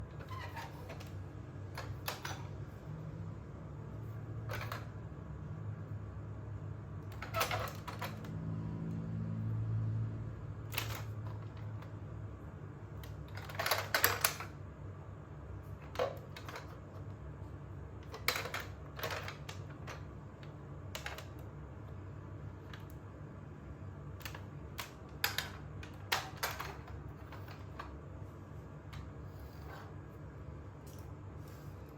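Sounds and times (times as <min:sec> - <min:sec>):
plastic toy car clicking: 0:13.1 - 0:14.5.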